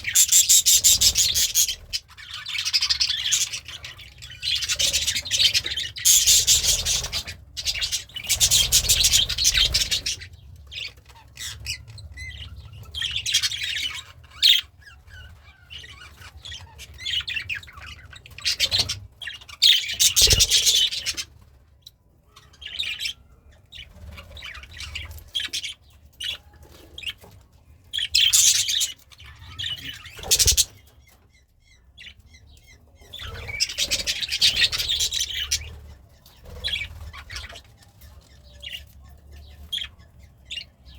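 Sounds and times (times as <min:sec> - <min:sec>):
budgerigar chirping and warbling: 0:00.0 - 0:10.3, 0:28.0 - 0:30.8.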